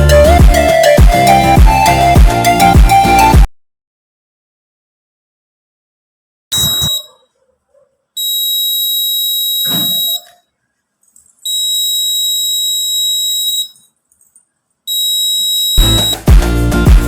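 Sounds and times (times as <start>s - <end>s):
high-pitched alarm buzzer beeps: 6.5s - 7.2s, 8.2s - 10.4s, 11.4s - 13.9s, 14.9s - 16.3s.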